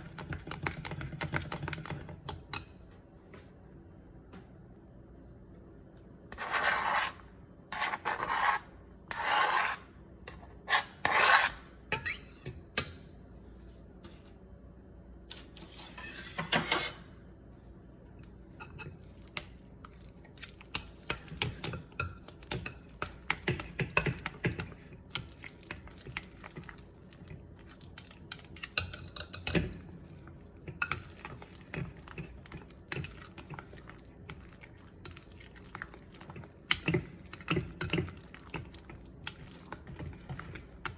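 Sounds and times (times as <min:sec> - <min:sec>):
utensils clicking and tapping: 0:20.6 - 0:25.3.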